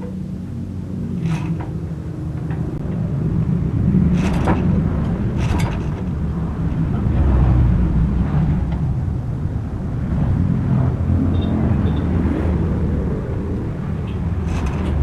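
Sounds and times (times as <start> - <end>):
motorcycle engine droning: 0.0 - 15.0.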